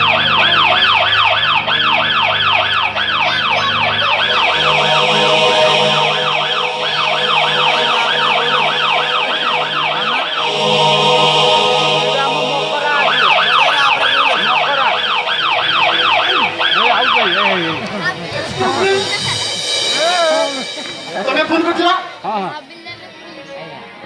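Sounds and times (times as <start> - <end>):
siren yelping: 0.0 - 22.2
low hum: 3.9 - 22.4.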